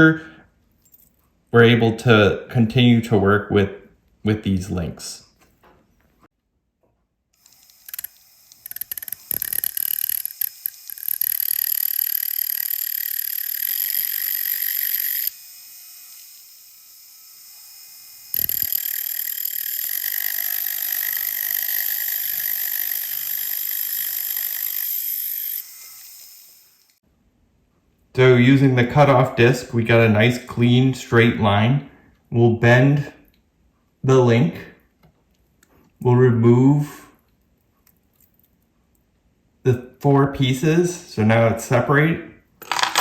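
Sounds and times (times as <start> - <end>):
rotary tool cutting metal: 7.4 - 27.0.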